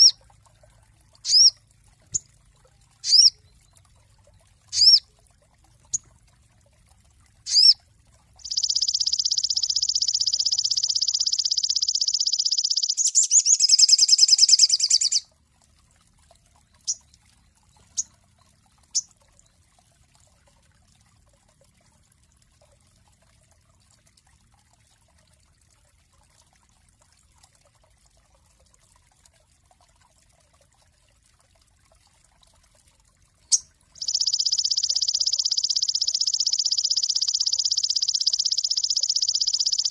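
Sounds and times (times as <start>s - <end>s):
songbird chirps and trills: 1.2s - 2.3s, 3.0s - 5.1s, 7.5s - 7.8s, 8.4s - 15.2s, 33.4s - 39.9s.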